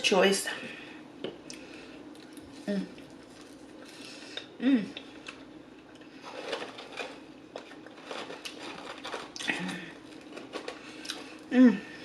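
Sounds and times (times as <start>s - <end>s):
closed-mouth hum: 0.0s - 6.4s
chewing and crunching fried chicken: 1.5s - 11.5s.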